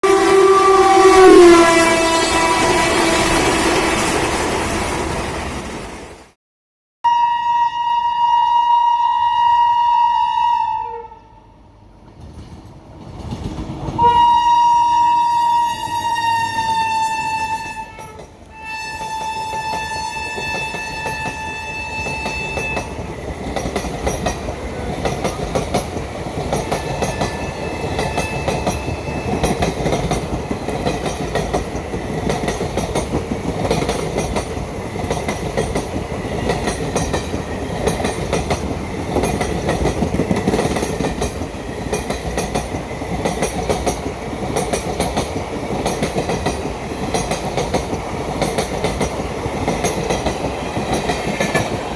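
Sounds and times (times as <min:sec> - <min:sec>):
locomotive horn: 0:00.0 - 0:04.6, 0:07.0 - 0:11.6, 0:14.0 - 0:23.0, 0:26.8 - 0:29.6
train rumble: 0:11.2 - 0:51.9
wheels clattering over rail joints: 0:20.4 - 0:51.9.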